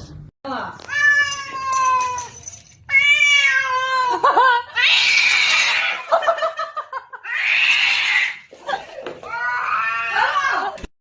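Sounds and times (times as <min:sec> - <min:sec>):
cat yowling: 0:02.9 - 0:04.1, 0:04.7 - 0:06.1, 0:07.2 - 0:08.4, 0:09.3 - 0:10.8.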